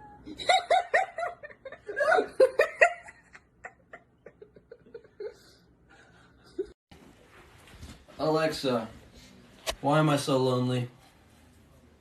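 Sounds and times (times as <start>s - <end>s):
person laughing hard: 0.3s - 5.6s.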